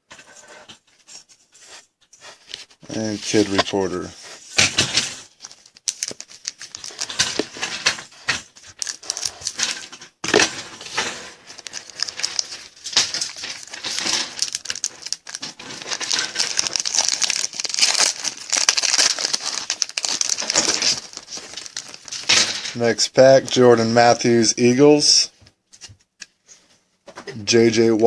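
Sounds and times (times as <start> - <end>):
wrapper tearing and crinkling: 4.7 - 22.6.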